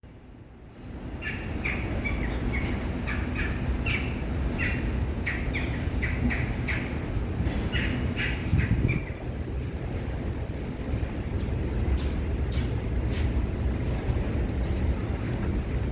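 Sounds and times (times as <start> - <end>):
diesel train engine rumble: 0.0 - 15.9
birds squawking: 1.2 - 7.1, 7.7 - 9.2.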